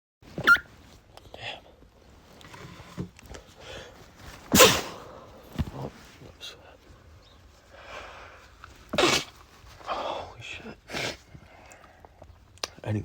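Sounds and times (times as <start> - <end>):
man sneezing: 4.5 - 5.3, 8.9 - 9.4
breathy inhales: 7.7 - 8.6.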